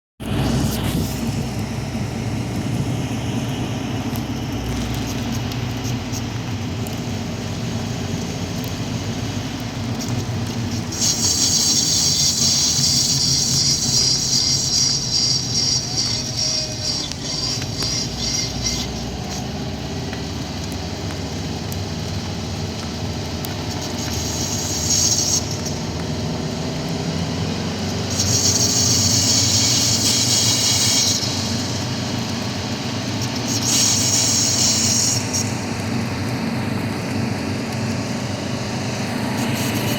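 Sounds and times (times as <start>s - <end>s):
car road and engine noise: 0.2s - 39.9s
high-pitched brake squeal: 10.9s - 19.4s, 24.0s - 25.8s, 28.0s - 31.8s, 33.3s - 35.6s.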